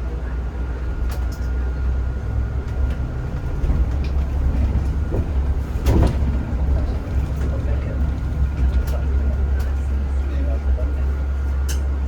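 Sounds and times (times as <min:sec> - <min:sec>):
bus ride rumble: 0:00.0 - 0:12.0
light clicks and rattles: 0:02.7 - 0:09.9.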